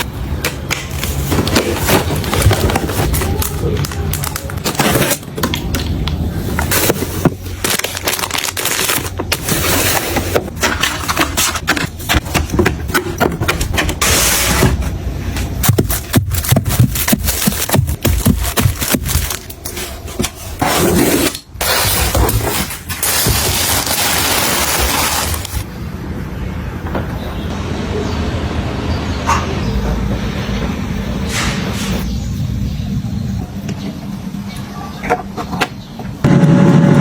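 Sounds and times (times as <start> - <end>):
household items clattering and scraping: 0.9 - 25.6.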